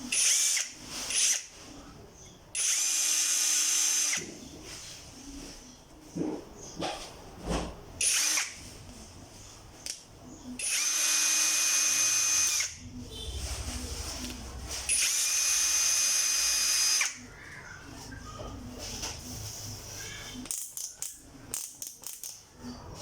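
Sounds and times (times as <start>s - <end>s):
cordless drill whining: 0.1s - 1.4s, 2.6s - 4.2s, 8.0s - 8.6s, 10.6s - 12.8s, 14.9s - 17.2s.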